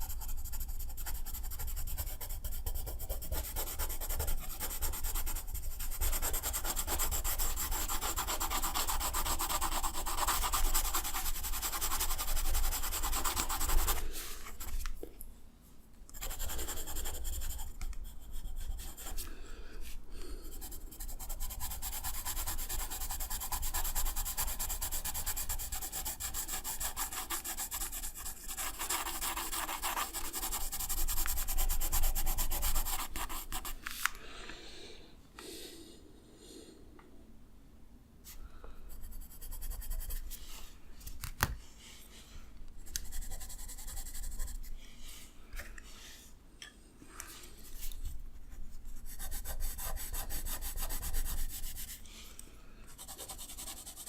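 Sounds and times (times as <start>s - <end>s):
drawing tool rubbing on paper: 0.0s - 14.8s, 16.2s - 19.3s, 20.5s - 33.8s, 49.0s - 52.0s, 53.0s - 54.0s.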